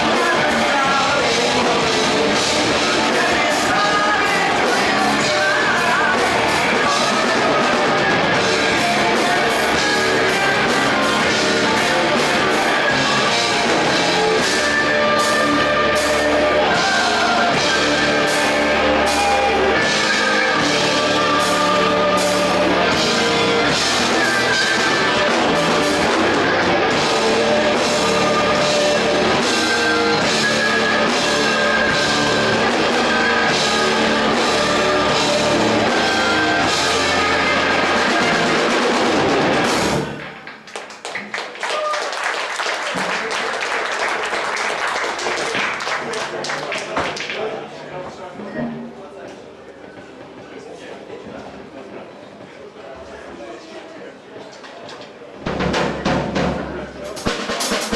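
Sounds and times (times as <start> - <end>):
steady drum beat: 0.0 - 40.2, 55.5 - 57.9
rock band playing live: 0.0 - 40.4, 55.5 - 57.9.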